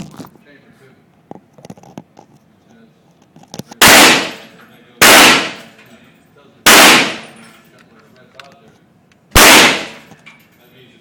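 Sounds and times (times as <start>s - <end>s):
rifle shots with echo: 3.8s - 5.8s, 6.6s - 7.4s, 9.3s - 10.1s.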